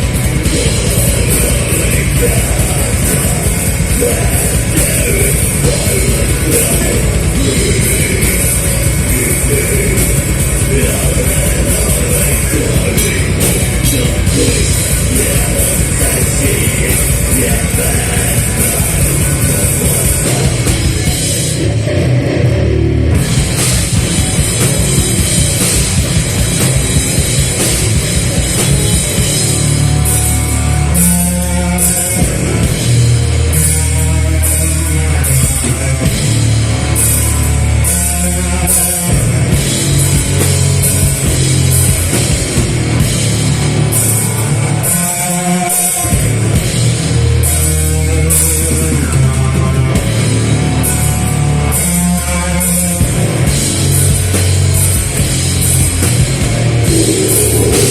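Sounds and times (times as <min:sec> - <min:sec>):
heavy metal band playing: 0:00.0 - 0:57.9.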